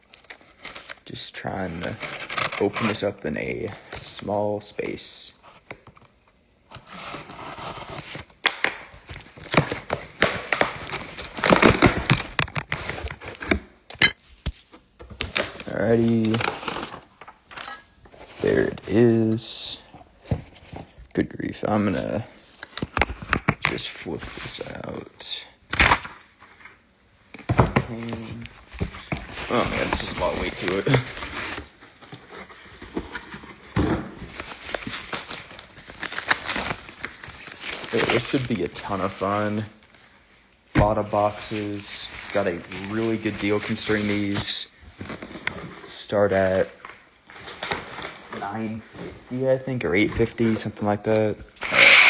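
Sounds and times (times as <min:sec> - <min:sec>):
packaging crinkling and tearing: 0:06.7 - 0:19.3, 0:28.0 - 0:40.1, 0:49.6 - 0:52.0
cardboard boxes being handled: 0:09.1 - 0:19.0, 0:19.8 - 0:21.1, 0:27.4 - 0:39.8.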